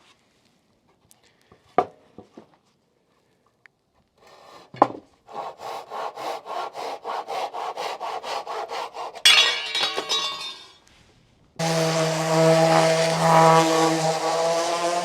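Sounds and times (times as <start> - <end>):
handsaw cutting wood: 5.3 - 9.3, 11.6 - 15.0.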